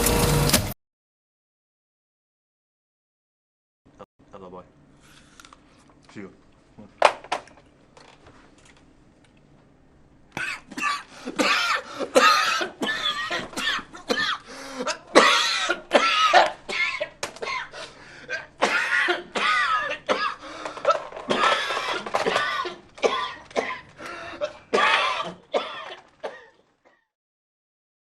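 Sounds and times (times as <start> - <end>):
man coughing: 10.4 - 27.1.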